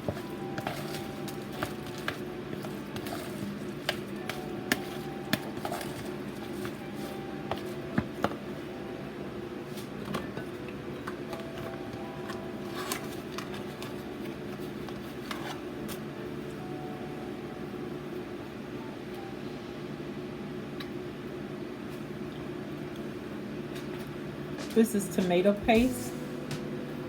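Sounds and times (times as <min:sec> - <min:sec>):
utensils and dishes clinking: 0:00.0 - 0:08.4, 0:09.7 - 0:16.0
steady low hum: 0:00.0 - 0:27.0.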